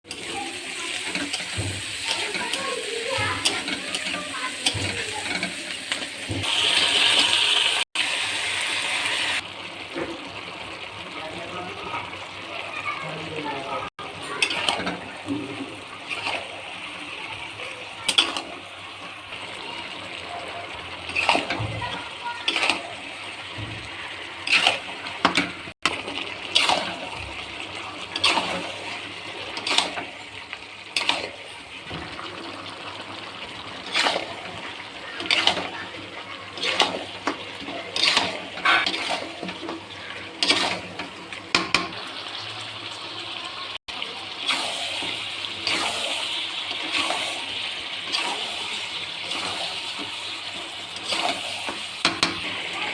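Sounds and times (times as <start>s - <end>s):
running water: 0.0s - 52.9s
metal kitchen utensils clinking: 0.1s - 6.6s, 14.2s - 16.6s, 18.0s - 18.6s, 20.8s - 25.8s, 27.9s - 32.5s, 33.7s - 42.0s.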